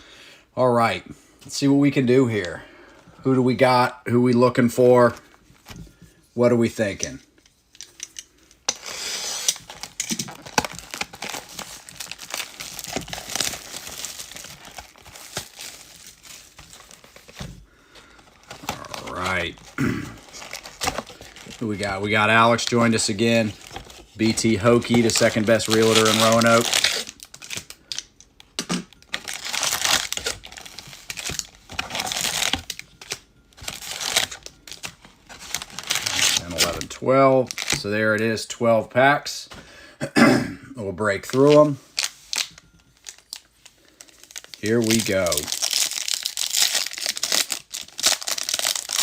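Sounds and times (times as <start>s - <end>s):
plastic wrapping crinkling and tearing: 8.7s - 28.1s, 28.8s - 37.9s, 41.2s - 49.0s.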